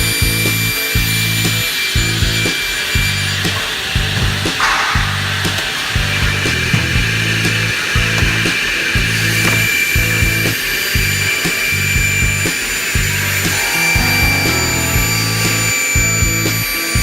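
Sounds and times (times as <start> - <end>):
background music with steady beat: 0.0 - 17.0
circular saw whining: 12.8 - 17.0.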